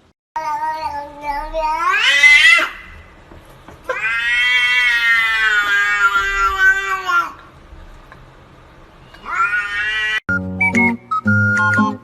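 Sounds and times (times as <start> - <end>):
cat yowling meows: 0.4 - 3.0, 3.9 - 7.4, 9.2 - 10.2.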